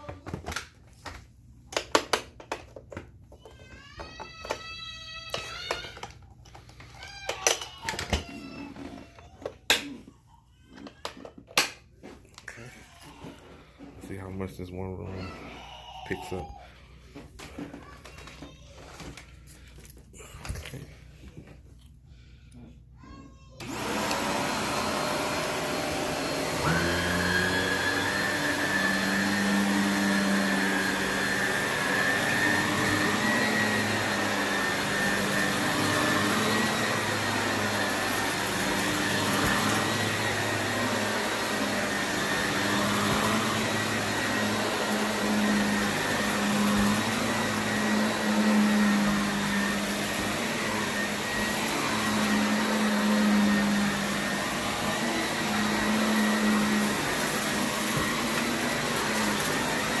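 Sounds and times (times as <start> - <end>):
vacuum cleaner on carpet: 23.6 - 60.0.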